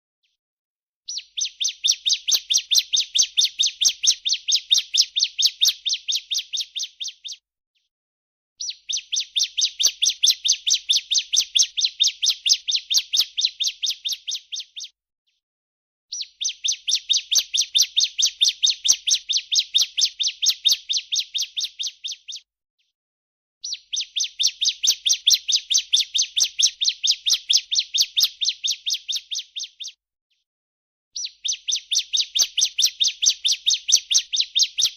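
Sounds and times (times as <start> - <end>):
bird trilling call: 1.1 - 7.4, 31.2 - 34.9.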